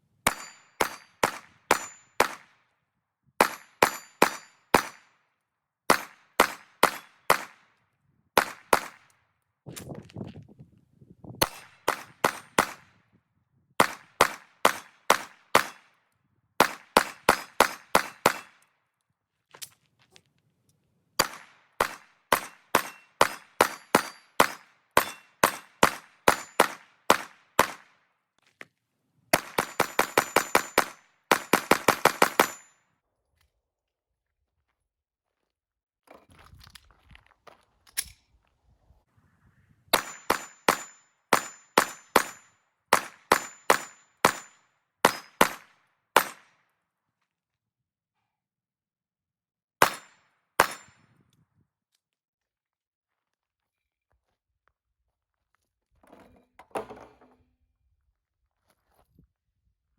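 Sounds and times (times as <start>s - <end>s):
pistol gunshots: 0.3s - 2.5s, 3.4s - 5.0s, 5.9s - 7.6s, 8.4s - 9.0s, 11.4s - 12.8s, 13.8s - 15.9s, 16.6s - 18.6s, 21.2s - 27.9s, 29.4s - 32.6s, 40.0s - 46.4s, 49.8s - 50.9s.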